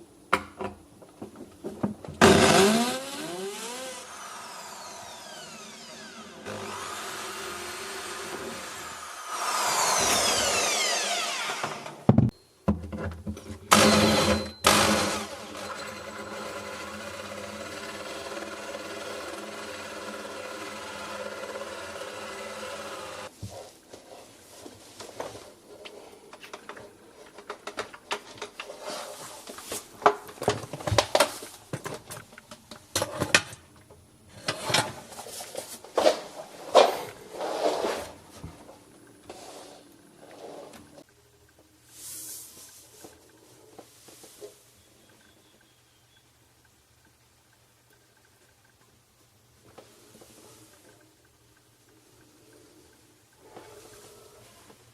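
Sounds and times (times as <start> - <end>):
electric drill boring wood: 2.2 - 12.0, 13.7 - 23.3.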